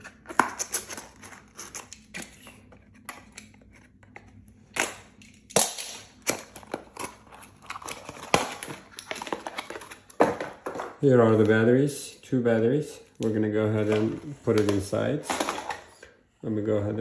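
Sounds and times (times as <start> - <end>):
packaging clicks and snaps: 0.0 - 10.8
packaging rustling: 6.3 - 10.8.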